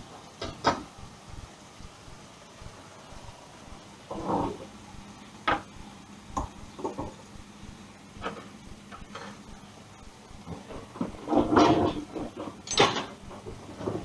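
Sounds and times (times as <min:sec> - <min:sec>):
kitchen items knocking and clattering: 0:06.4 - 0:07.2, 0:10.5 - 0:14.0
kitchen item scraping: 0:11.3 - 0:13.0.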